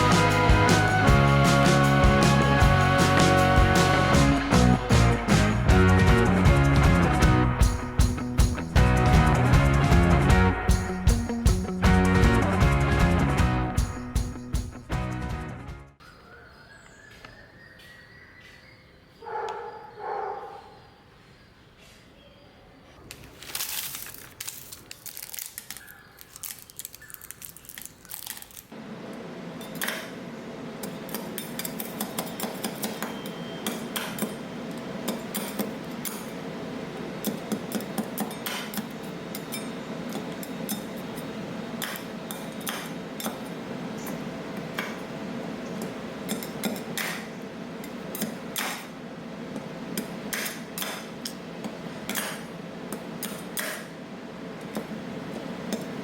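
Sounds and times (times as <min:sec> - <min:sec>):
machine hum: 0:24.0 - 0:56.0.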